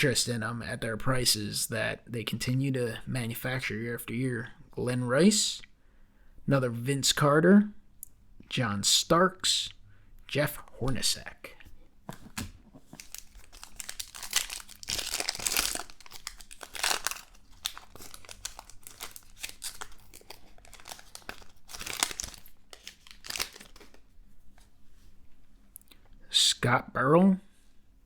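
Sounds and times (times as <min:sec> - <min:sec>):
wrapper crinkling and tearing: 0:12.3 - 0:24.1.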